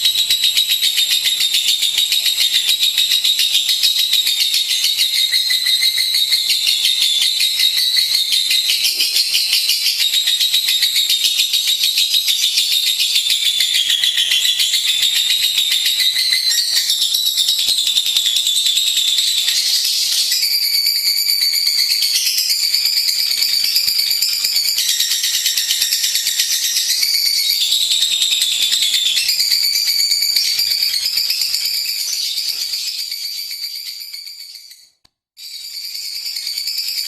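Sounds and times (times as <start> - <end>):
lovebird chattering trill: 0.5 - 11.5.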